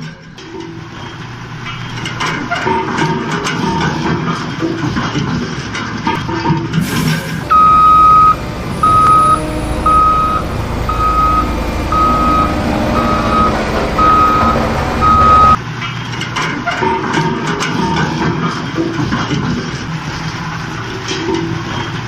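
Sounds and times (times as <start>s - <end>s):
low engine rumble: 7.4s - 15.6s
reversing alarm beeping: 7.4s - 15.6s.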